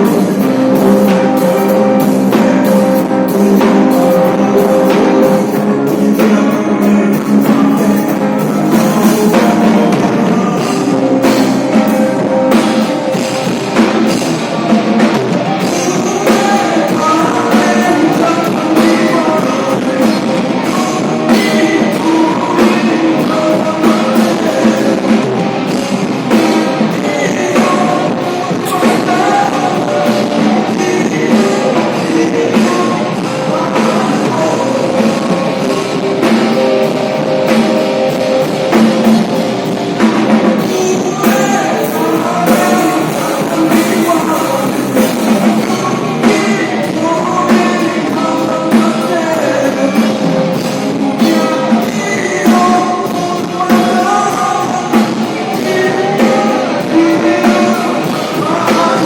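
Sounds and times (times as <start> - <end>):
rock music with singing: 0.0 - 59.0.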